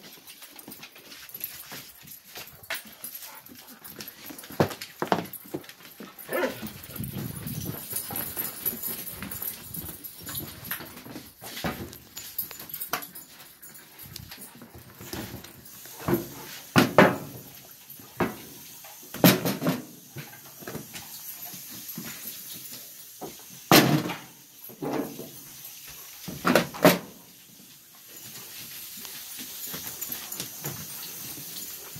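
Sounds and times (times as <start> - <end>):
dogs barking: 6.2 - 6.9.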